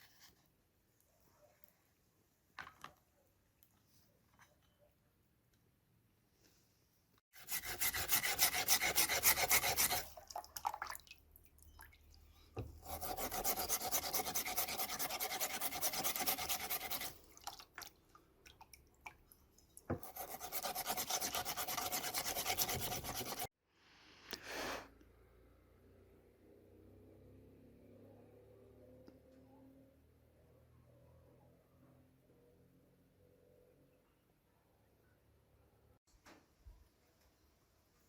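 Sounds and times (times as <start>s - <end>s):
rasping strokes on axe: 7.4s - 10.1s, 12.6s - 17.2s, 20.0s - 23.5s.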